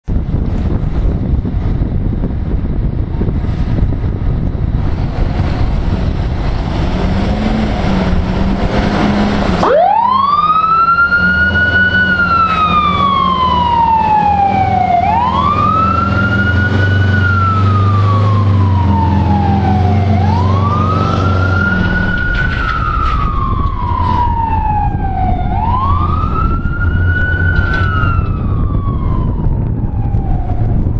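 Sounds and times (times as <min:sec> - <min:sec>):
truck engine rumble: 0:00.0 - 0:30.9
wind buffeting microphone: 0:00.0 - 0:30.9
fire truck siren: 0:06.5 - 0:30.9.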